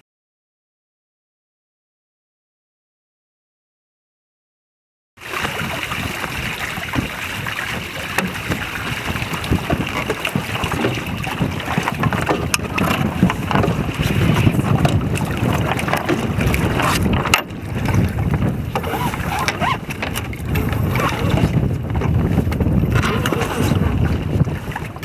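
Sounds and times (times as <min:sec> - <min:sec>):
water rushing along hull: 0:05.2 - 0:25.0
wind buffeting microphone: 0:05.2 - 0:25.0.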